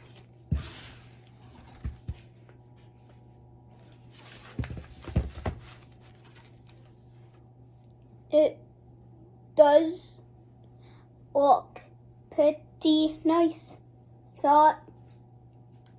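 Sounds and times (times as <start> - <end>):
steady low hum: 0.0 - 15.9
page turning: 4.2 - 7.3.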